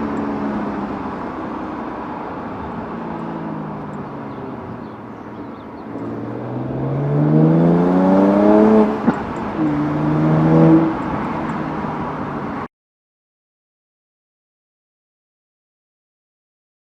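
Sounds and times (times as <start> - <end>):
car engine accelerating: 0.0 - 12.7.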